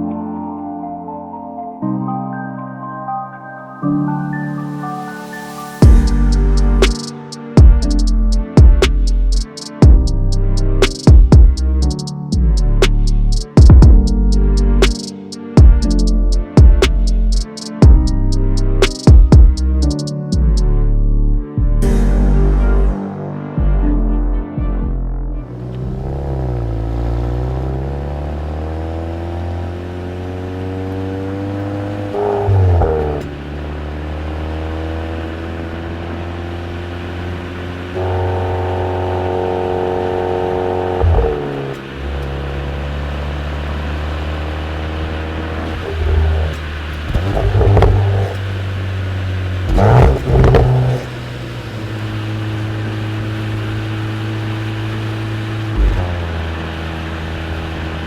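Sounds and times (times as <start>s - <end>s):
car engine idling: 5.8s - 7.0s, 35.4s - 58.0s
engine revving: 25.4s - 58.0s.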